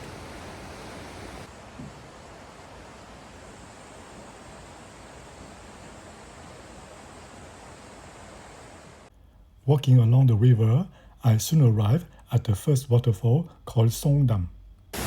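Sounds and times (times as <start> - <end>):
stream rushing: 0.0 - 9.1.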